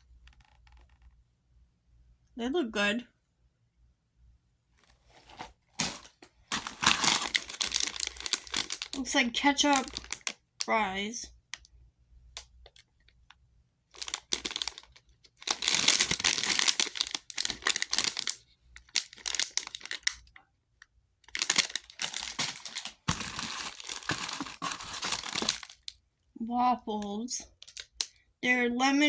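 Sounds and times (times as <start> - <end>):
plastic wrappers rustling: 5.0 - 10.8, 13.9 - 20.4, 21.2 - 26.0, 27.4 - 28.2.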